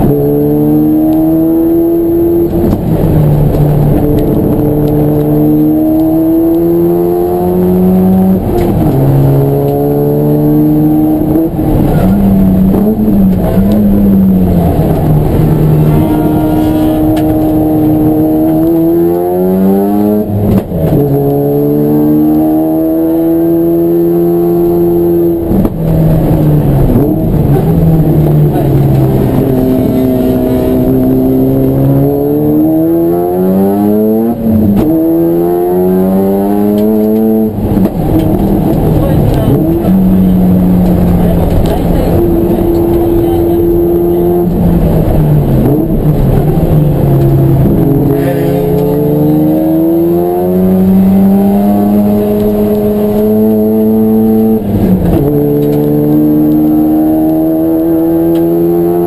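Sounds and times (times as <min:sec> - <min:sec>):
race car engine accelerating: 0:00.0 - 0:59.0.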